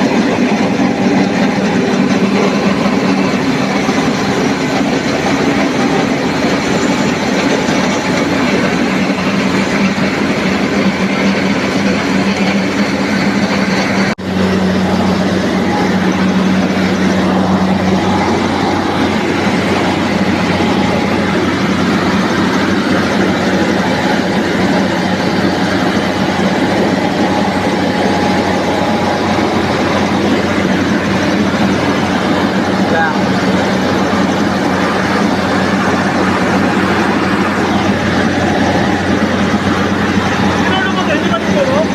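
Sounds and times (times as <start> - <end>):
rice milling machine running: 0.0 - 41.9.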